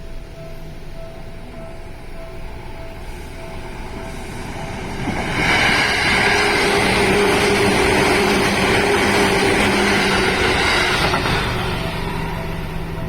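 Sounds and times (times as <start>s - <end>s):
steady low hum: 0.0s - 5.4s
train rushing past: 0.0s - 13.0s.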